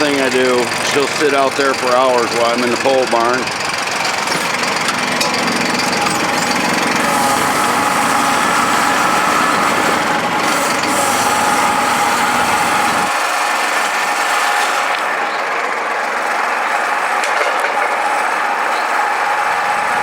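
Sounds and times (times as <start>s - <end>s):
engine running: 0.0s - 20.0s.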